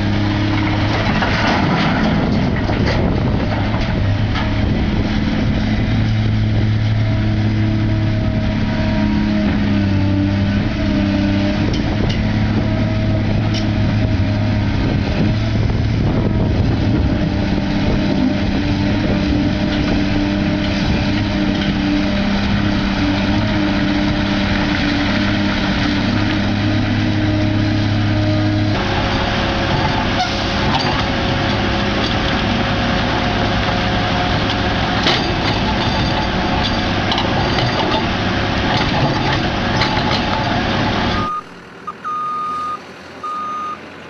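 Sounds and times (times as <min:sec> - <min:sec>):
dense mechanical roar: 0:00.0 - 0:44.0
diesel engine running: 0:00.0 - 0:44.0.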